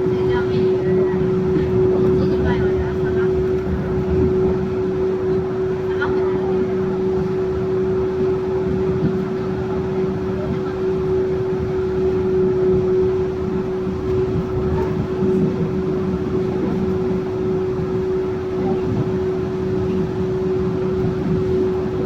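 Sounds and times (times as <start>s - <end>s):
train rolling with steady whine: 0.0s - 22.0s.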